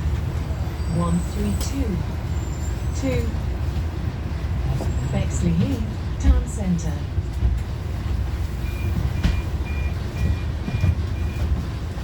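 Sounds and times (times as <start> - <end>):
bus engine running: 0.0 - 12.0
high warning beeps: 8.6 - 11.5.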